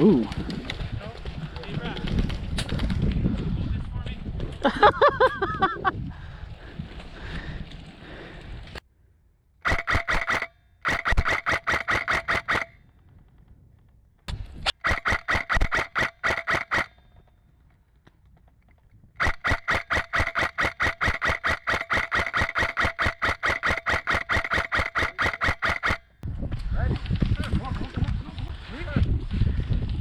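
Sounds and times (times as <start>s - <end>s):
airsoft gun firing bursts: 9.6s - 12.8s, 14.7s - 17.2s, 19.2s - 26.2s.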